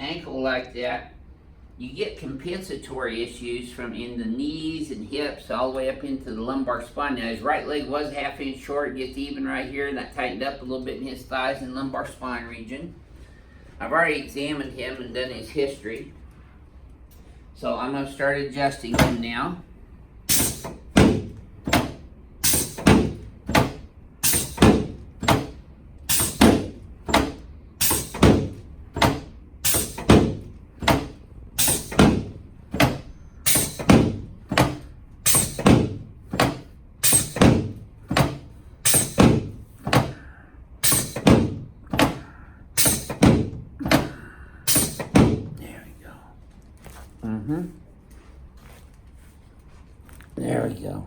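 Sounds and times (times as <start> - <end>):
rapid thumps of chiropractic adjustment: 20.3 - 40.2.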